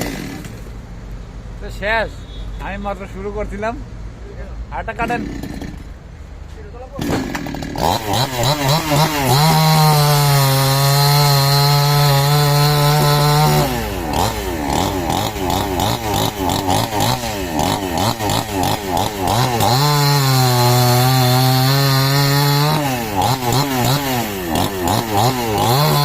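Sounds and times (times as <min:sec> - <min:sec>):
chainsaw cutting wood: 0:00.0 - 0:00.7, 0:05.1 - 0:06.0, 0:06.9 - 0:26.0.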